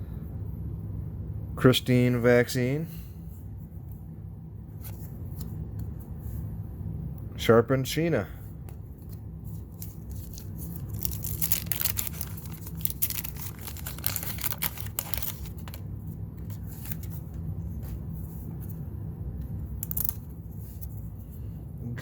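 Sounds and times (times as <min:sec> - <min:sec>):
stiff cards handled: 0:08.6 - 0:18.8, 0:19.7 - 0:21.2
wax paper wrapper tearing: 0:09.5 - 0:15.8, 0:19.8 - 0:20.3.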